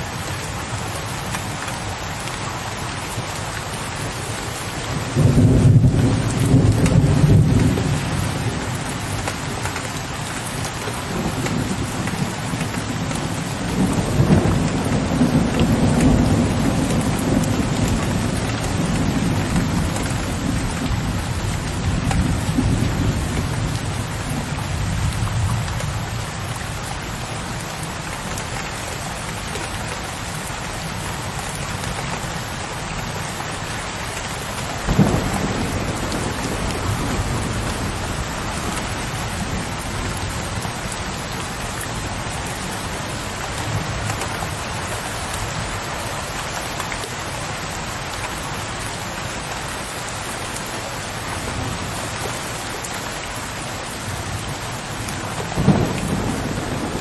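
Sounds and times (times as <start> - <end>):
steady rain: 0.0 - 57.0
soft roll of thunder: 5.1 - 9.1, 34.8 - 40.9, 55.3 - 57.0
deep thunderclap: 5.2 - 8.7, 34.8 - 40.7, 55.3 - 57.0.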